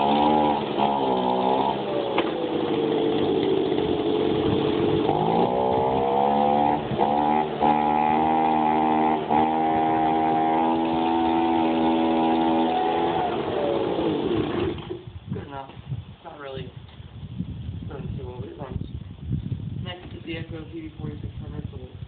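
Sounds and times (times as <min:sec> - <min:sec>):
small power tool engine revving: 0:00.0 - 0:15.0.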